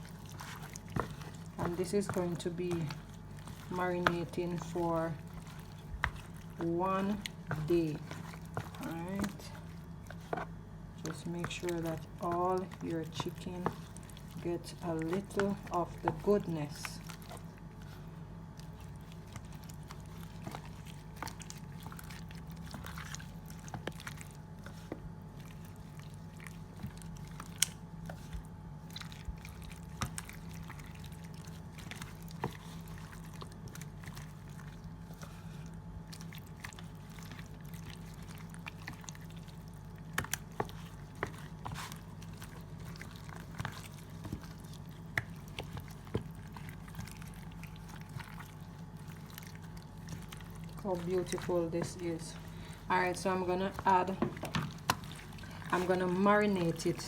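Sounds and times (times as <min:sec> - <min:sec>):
hands squelching marinade into chicken: 0:00.0 - 0:57.0
steady low hum: 0:00.0 - 0:57.0.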